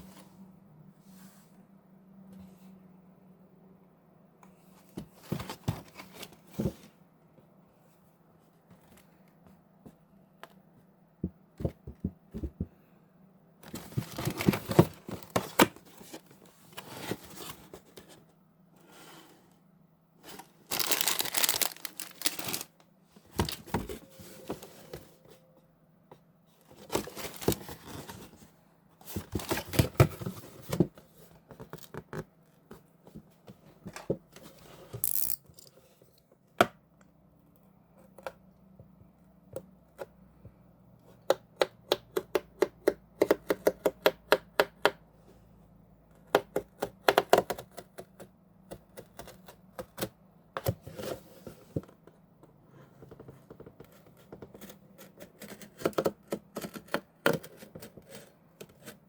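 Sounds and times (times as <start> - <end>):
snack packaging tearing and crinkling: 20.7 - 22.7.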